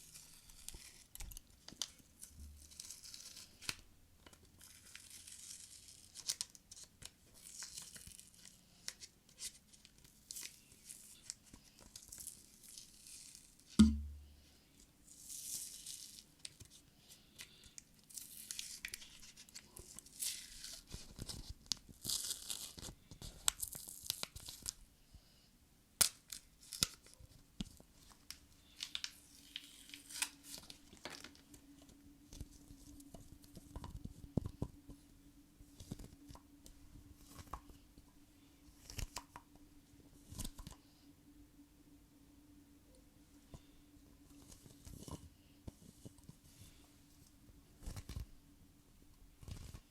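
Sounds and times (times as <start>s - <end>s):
loud thump: 13.8s - 14.3s.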